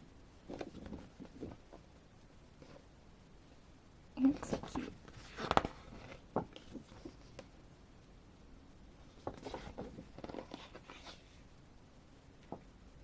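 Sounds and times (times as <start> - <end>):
pages turning rustle: 4.3 - 7.5, 9.2 - 11.4.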